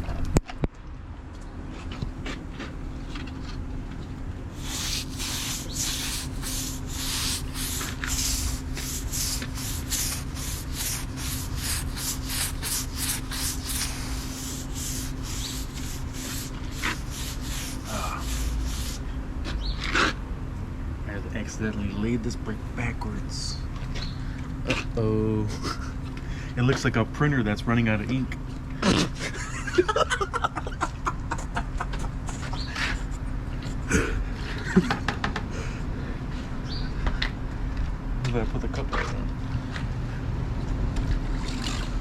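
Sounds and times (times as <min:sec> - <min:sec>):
stiff brush scrubbing wet brick: 0:04.5 - 0:19.1.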